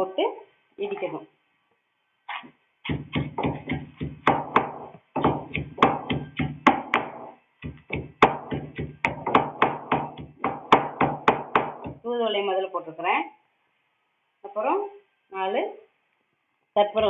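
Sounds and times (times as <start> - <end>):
pestle pounding in a mortar: 2.8 - 12.0.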